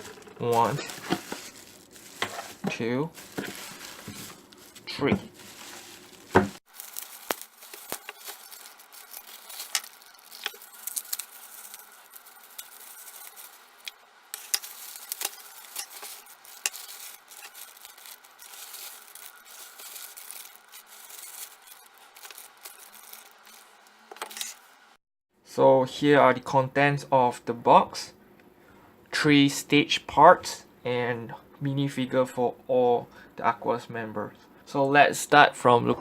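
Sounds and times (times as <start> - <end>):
bubble wrap clicks: 0.0 - 23.7
plastic packaging crinkling: 0.0 - 24.8.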